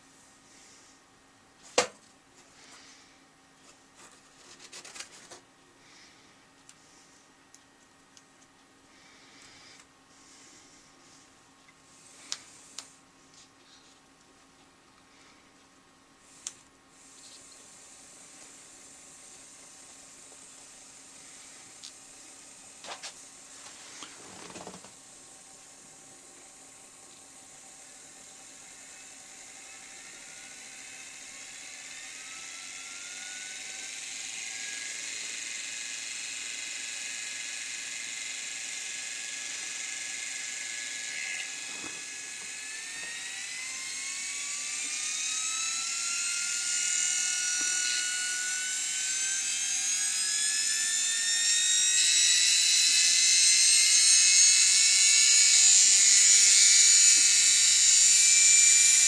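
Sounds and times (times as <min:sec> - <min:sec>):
washing machine motor whine: 0:16.9 - 0:59.0.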